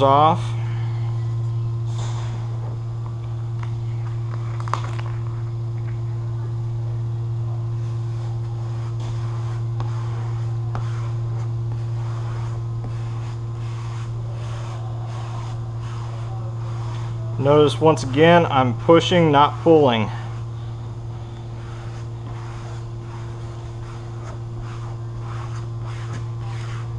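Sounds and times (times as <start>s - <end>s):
steady low hum: 0.0s - 26.9s
vinyl film rustling and scraping: 3.6s - 5.4s, 7.9s - 17.4s.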